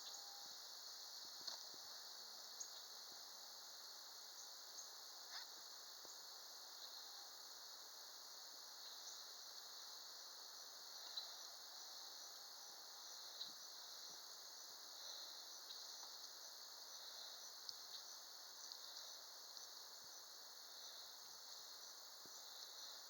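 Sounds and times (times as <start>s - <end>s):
high-pitched insect chorus: 0.0s - 23.0s
faint ticks: 1.2s - 1.9s, 10.9s - 11.5s, 15.0s - 19.8s, 21.0s - 23.0s.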